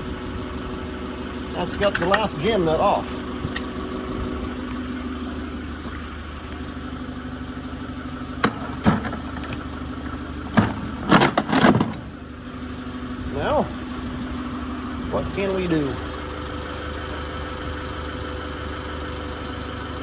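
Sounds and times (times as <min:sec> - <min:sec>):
forklift engine idling: 0:00.0 - 0:20.0
sharp metal clanks: 0:01.6 - 0:02.8.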